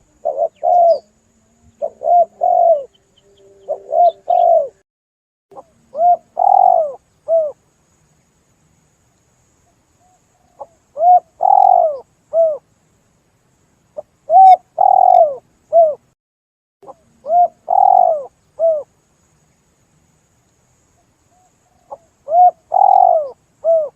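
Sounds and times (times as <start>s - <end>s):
dove cooing: 0.0s - 4.8s, 5.6s - 7.6s, 10.5s - 12.6s, 14.3s - 16.0s, 16.8s - 18.9s, 21.8s - 23.9s.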